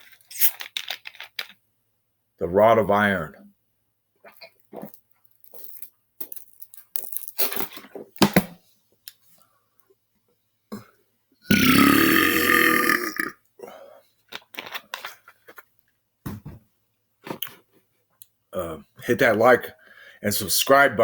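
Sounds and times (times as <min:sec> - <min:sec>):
man belching: 0:11.5 - 0:13.8.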